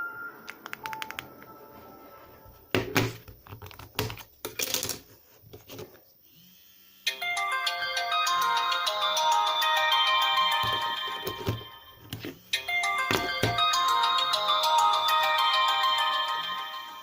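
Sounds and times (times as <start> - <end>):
melodic ringtone: 0.0 - 2.4, 7.1 - 17.0
phone clicks: 0.5 - 1.5.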